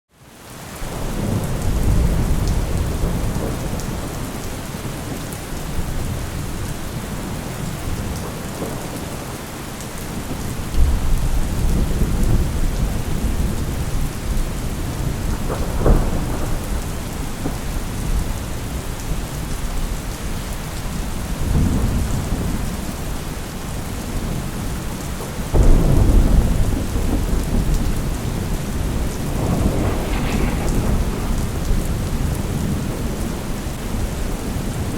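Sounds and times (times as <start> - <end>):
heavy rain: 0.2 - 34.9
thunder rolling: 25.5 - 34.9
sharp thunder crack: 25.6 - 33.7.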